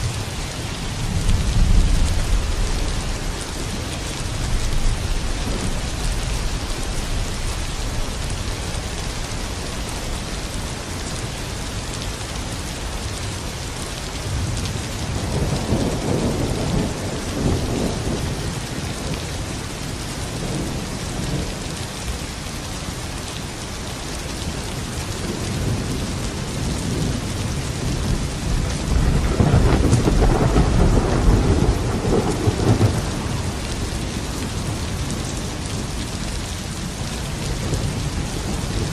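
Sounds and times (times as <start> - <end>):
heavy rainfall: 0.0 - 38.9
rolling thunder: 25.4 - 35.9.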